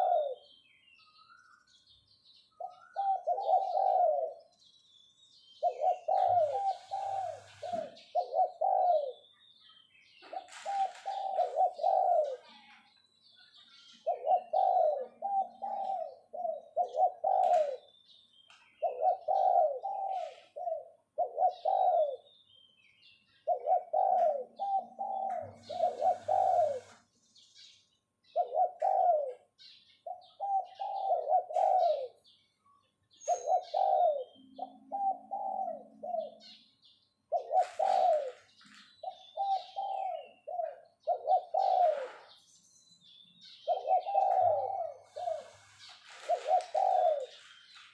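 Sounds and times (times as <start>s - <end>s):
dove cooing: 0.0s - 0.6s, 2.6s - 4.6s, 5.6s - 9.3s, 10.2s - 12.8s, 13.5s - 17.9s, 18.8s - 22.3s, 23.4s - 27.0s, 28.3s - 32.4s, 33.2s - 36.7s, 37.3s - 42.4s, 43.5s - 47.6s
faint small bird chirps: 0.0s - 35.5s, 36.1s - 47.9s.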